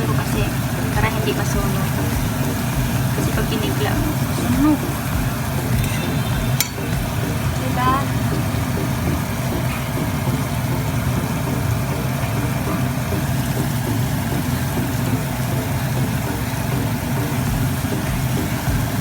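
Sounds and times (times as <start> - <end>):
frying in oil sizzle: 0.0 - 19.0
low hum: 0.0 - 19.0.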